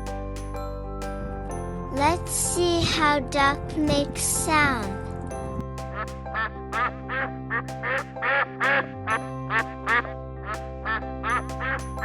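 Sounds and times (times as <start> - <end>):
background music: 0.0 - 12.0
duck quacking rapidly: 6.8 - 8.9.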